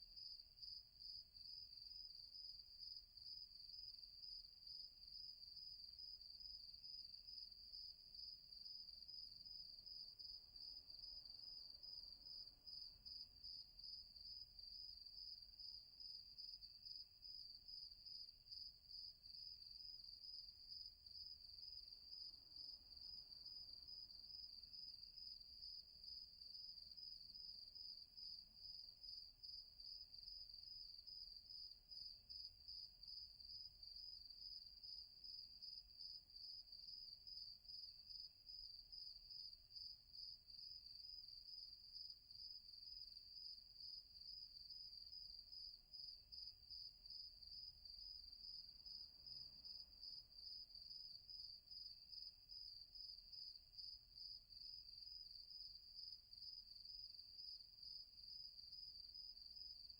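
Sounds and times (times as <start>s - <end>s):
crickets chirping: 0.2s - 59.9s.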